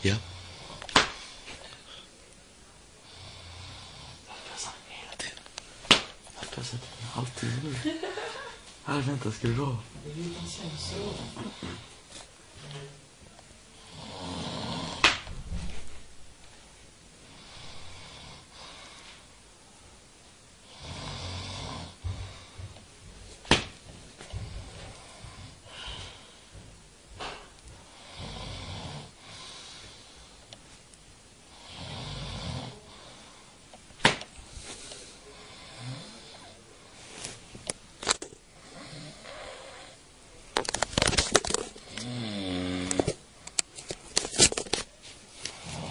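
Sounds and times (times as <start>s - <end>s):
man snoring: 0.0s - 1.4s, 3.0s - 4.2s, 13.8s - 15.2s, 17.3s - 19.0s, 20.6s - 22.6s, 27.9s - 30.1s, 31.5s - 33.3s, 35.2s - 36.7s, 38.6s - 40.0s, 41.8s - 43.1s, 45.6s - 45.9s
flyswatter slaps: 5.9s - 6.2s, 23.5s - 23.8s, 34.0s - 34.3s.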